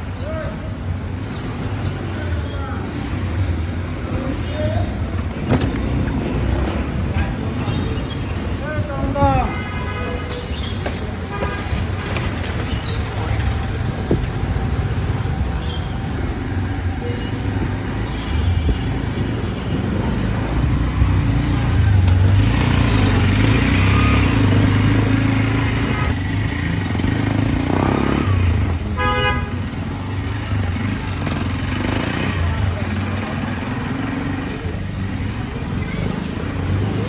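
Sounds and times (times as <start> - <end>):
traffic engine rumble: 0.0 - 37.0
car horn honk: 29.0 - 29.6.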